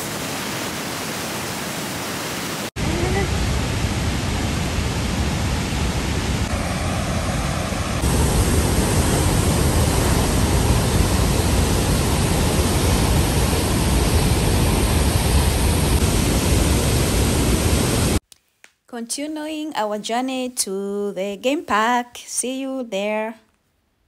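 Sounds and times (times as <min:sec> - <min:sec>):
waterfall rushing: 0:00.0 - 0:18.2.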